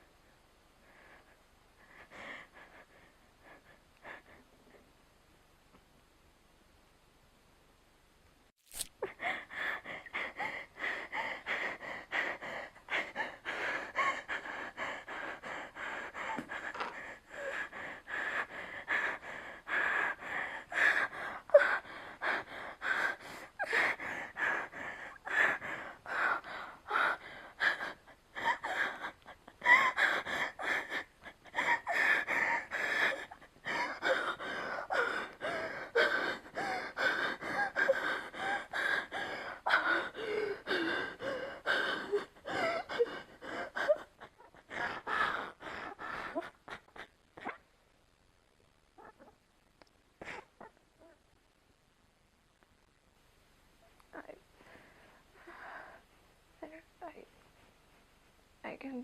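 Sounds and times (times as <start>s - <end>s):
person gasping and breathing hard: 9.0s - 47.5s.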